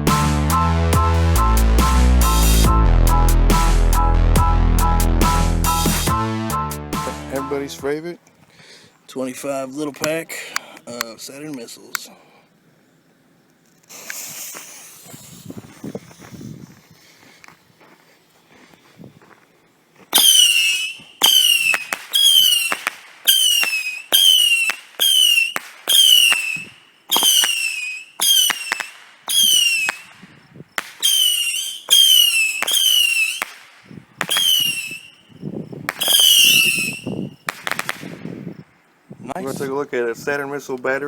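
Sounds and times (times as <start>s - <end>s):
firework whistle ending in pop: 20.2s - 30.1s, 31.0s - 33.5s, 34.2s - 35.2s, 35.9s - 37.9s.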